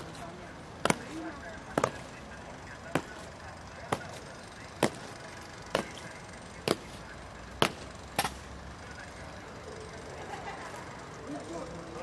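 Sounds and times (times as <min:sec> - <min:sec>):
crowd background: 0:00.0 - 0:12.0
boots stamping on pavement: 0:00.8 - 0:02.2, 0:02.9 - 0:07.0, 0:07.6 - 0:08.4.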